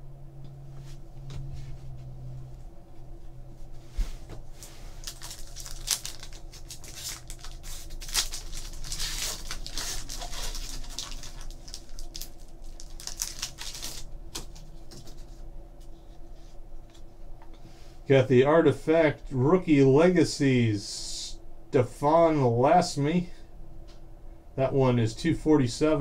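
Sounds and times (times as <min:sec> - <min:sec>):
faint steady hum: 0:00.0 - 0:26.0
wrappers crinkling and tearing: 0:04.6 - 0:15.3.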